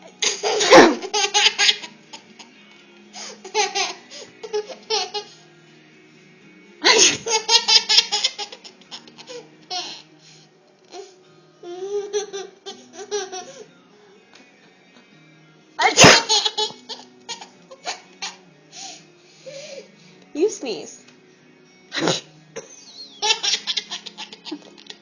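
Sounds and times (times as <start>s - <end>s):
loud sneeze: 0.2s - 1.0s, 6.8s - 7.3s, 15.8s - 16.4s, 21.9s - 22.3s
young child laughing: 0.2s - 1.9s, 6.8s - 10.0s, 15.8s - 18.4s.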